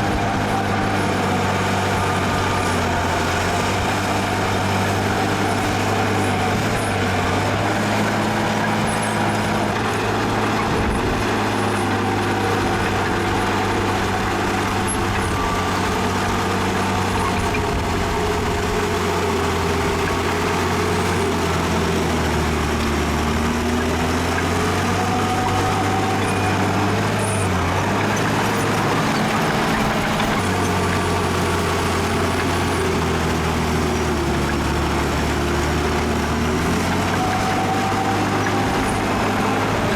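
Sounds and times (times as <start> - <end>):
heavy diesel engine running: 0.0 - 39.9.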